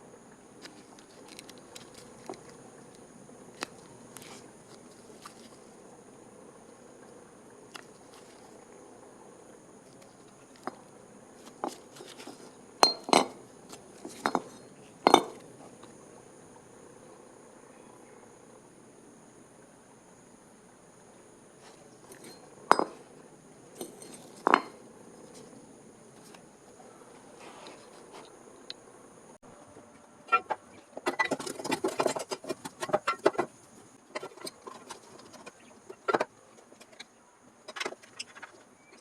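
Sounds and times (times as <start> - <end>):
metal tools clinking and knocking: 12.8 - 13.4, 14.1 - 15.4, 22.1 - 23.0, 23.8 - 24.8.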